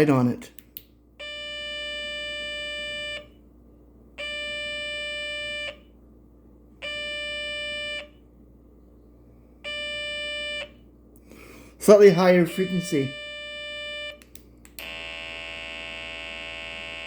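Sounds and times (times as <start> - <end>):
buzzy alarm beeps: 1.2 - 3.3, 4.2 - 5.8, 9.7 - 10.7, 11.9 - 14.2, 14.8 - 17.0.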